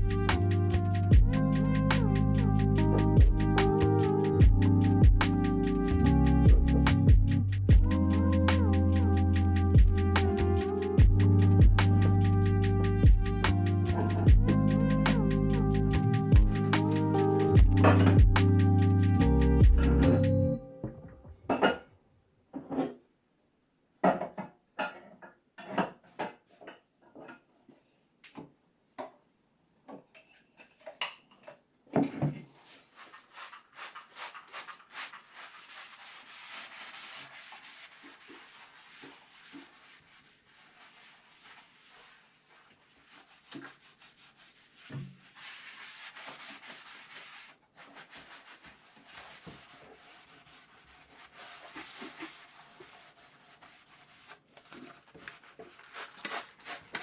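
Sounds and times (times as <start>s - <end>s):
surface being scrubbed: 32.7s - 57.0s.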